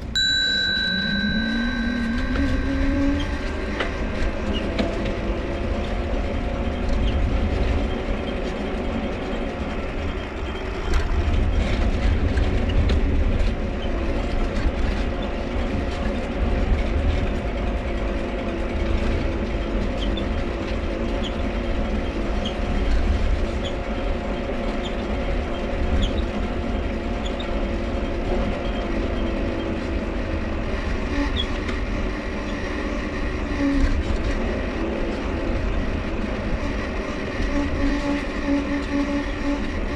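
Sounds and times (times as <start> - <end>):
bicycle dynamo whine: 0.0 - 11.8, 30.5 - 39.9.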